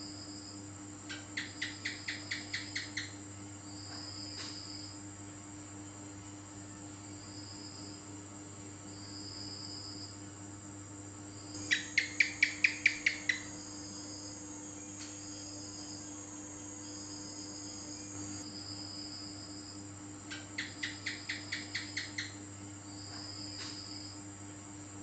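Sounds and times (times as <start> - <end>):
insects trilling: 0.0 - 25.0
gecko chirping: 1.1 - 3.2, 11.6 - 13.6, 20.3 - 22.4.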